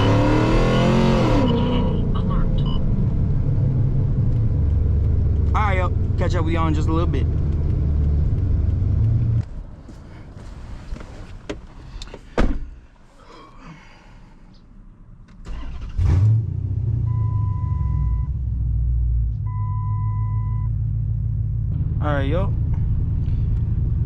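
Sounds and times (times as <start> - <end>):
car engine starting and idling: 0.0 - 12.4, 15.1 - 24.0.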